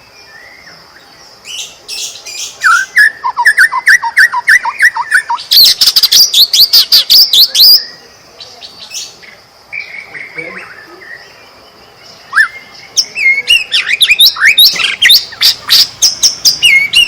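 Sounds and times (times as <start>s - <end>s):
bird singing whistled phrases: 1.5s - 8.1s, 12.1s - 17.0s.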